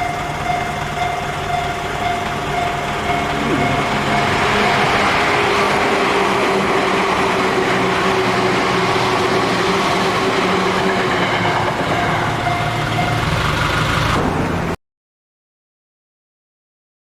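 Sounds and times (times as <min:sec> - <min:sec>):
humming tone: 0:00.0 - 0:14.2
train wheels rumbling on rails: 0:00.0 - 0:14.8.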